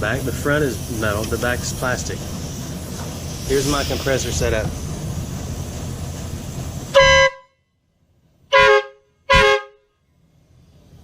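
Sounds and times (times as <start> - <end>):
electric air horn blasts: 6.9 - 7.5, 8.5 - 9.8.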